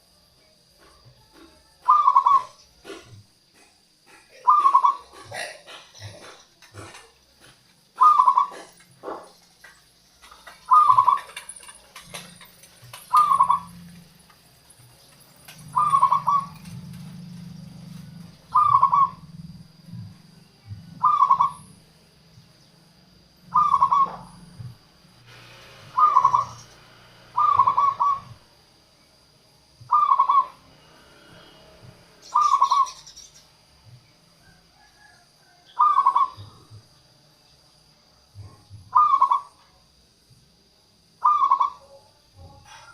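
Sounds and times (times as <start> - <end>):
dove cooing: 1.2 - 9.4, 10.2 - 14.2, 15.2 - 21.9, 23.4 - 24.8, 25.9 - 26.7, 27.3 - 28.5, 29.8 - 30.6, 32.2 - 33.2, 34.4 - 36.9, 38.4 - 39.6, 41.2 - 42.9.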